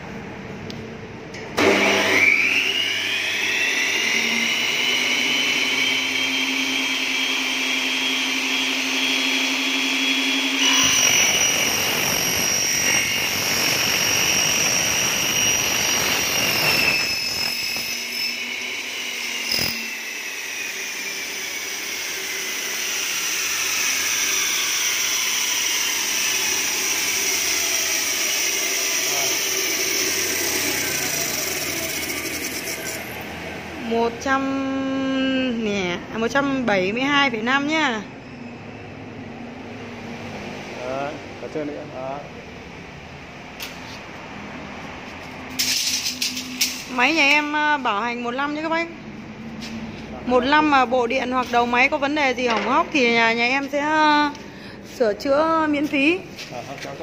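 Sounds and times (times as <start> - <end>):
click: 0.7 - 1.5
saw motors whining: 1.6 - 38.6, 45.2 - 54.4
saw grinding through aluminium: 1.7 - 33.4, 45.5 - 48.9.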